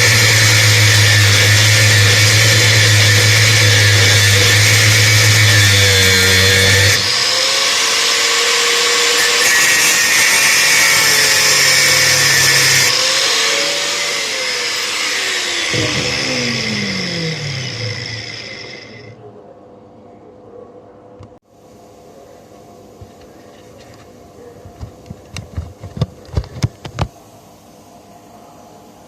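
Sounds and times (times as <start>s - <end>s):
power tool grinding metal: 0.0s - 19.1s.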